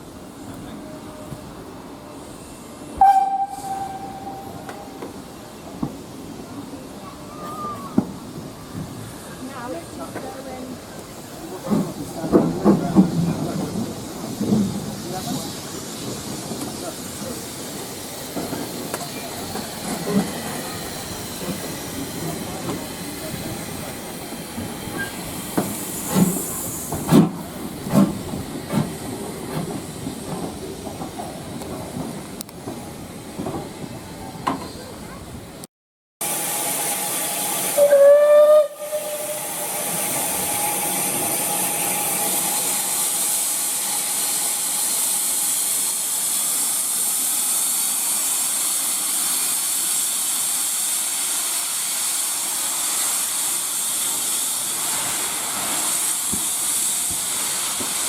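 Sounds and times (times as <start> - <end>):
hiss of escaping steam: 1.0 - 10.1, 10.8 - 31.6, 36.2 - 58.0
steam whistle blast: 3.0 - 5.0, 36.7 - 42.7
steam locomotive knocks: 11.6 - 16.9, 24.6 - 32.8, 56.2 - 58.0.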